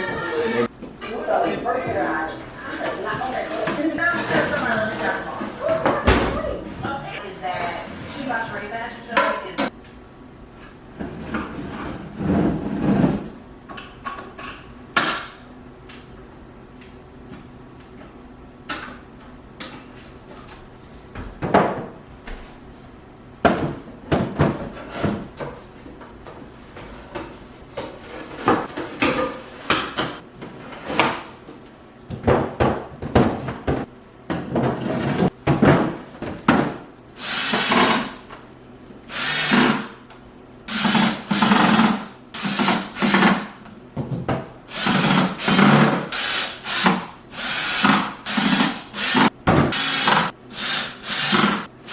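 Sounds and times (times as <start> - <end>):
power drill driving screws: 37.2 - 38.2, 39.1 - 39.9, 40.7 - 43.4, 44.7 - 51.9.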